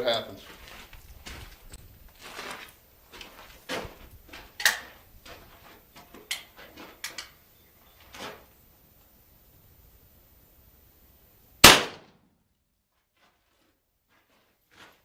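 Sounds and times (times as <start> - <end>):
shotgun action clicking: 11.6 - 12.0.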